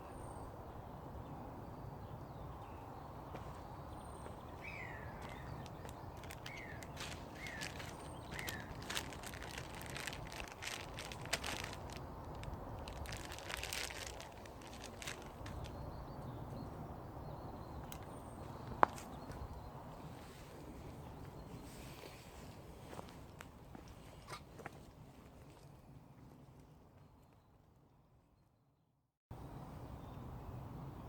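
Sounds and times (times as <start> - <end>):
bird chirping: 1.8 - 12.0
footsteps crackling through twigs: 4.2 - 15.9
steady low rumble: 5.1 - 16.3
twigs snapping: 5.2 - 15.8.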